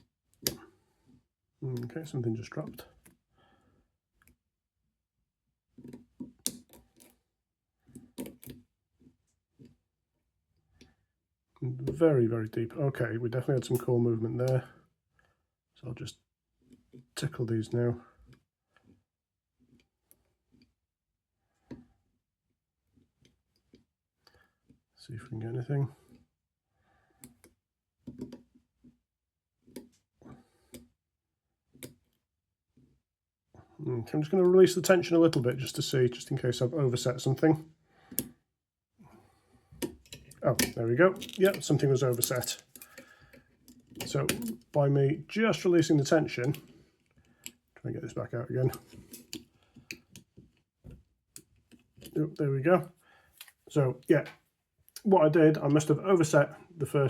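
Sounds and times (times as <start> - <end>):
lock picking clicks and scrapes: 39.8 - 44.7, 48.7 - 50.6.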